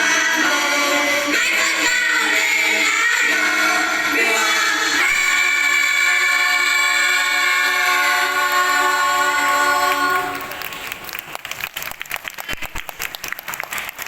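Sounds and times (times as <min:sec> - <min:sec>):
choir singing: 0:00.0 - 0:10.6
audience applause: 0:07.7 - 0:14.0.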